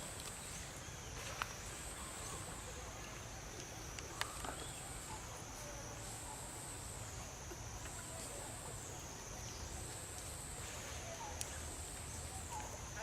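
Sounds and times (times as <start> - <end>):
insects droning: 0.0 - 13.0.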